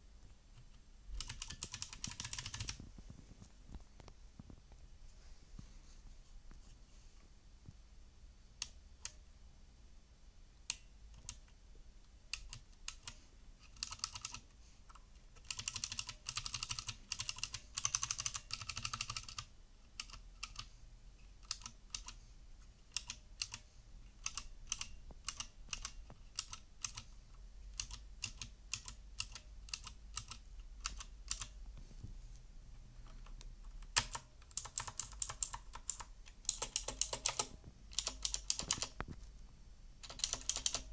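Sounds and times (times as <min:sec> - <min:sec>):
clicky mechanical keyboard typing: 0:00.6 - 0:02.9, 0:12.3 - 0:14.5, 0:15.4 - 0:20.7, 0:21.4 - 0:22.2, 0:22.9 - 0:23.6, 0:24.2 - 0:27.1, 0:27.7 - 0:31.6, 0:33.2 - 0:39.1, 0:40.0 - 0:40.9.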